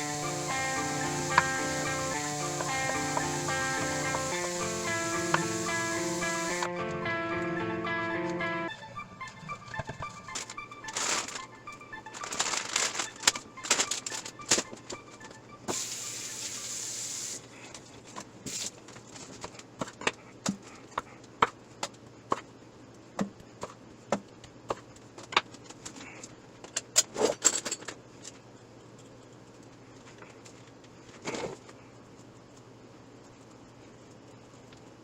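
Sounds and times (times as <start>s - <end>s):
short hiss: 15.7s - 17.4s.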